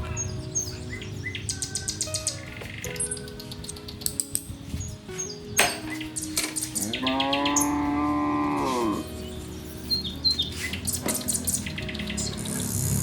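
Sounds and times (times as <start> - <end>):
cow mooing: 6.8 - 9.1.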